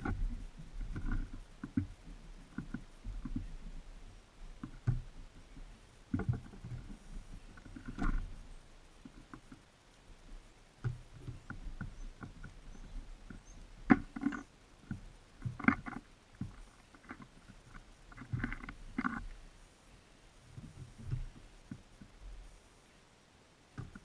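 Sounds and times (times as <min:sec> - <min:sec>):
birds scrabbling and thumping on feeder: 0:00.0 - 0:03.8, 0:04.4 - 0:09.6, 0:10.8 - 0:19.4
birds pecking at feeder: 0:10.8 - 0:19.4.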